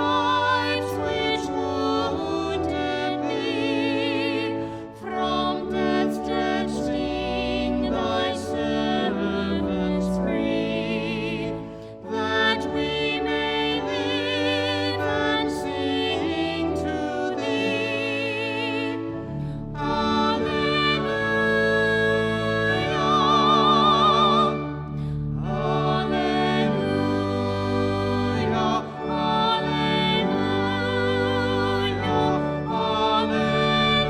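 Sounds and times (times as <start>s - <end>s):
person singing with vibrato: 0.0s - 34.0s
sustained instrumental accompaniment: 0.0s - 34.0s.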